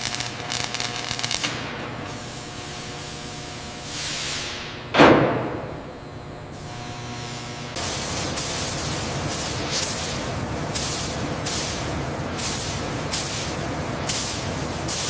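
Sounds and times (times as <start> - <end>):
steady hiss: 7.7 - 15.0.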